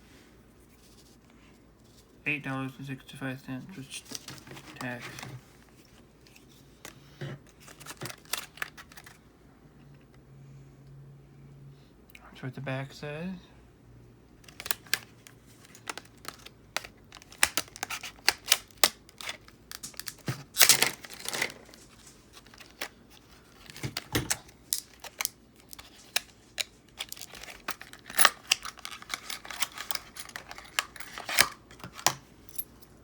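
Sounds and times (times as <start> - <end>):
packaging clicks: 7.6 - 9.2, 14.4 - 21.8, 22.4 - 32.2
packaging tearing: 7.6 - 9.2, 14.5 - 31.8
plastic crinkling: 14.4 - 32.0.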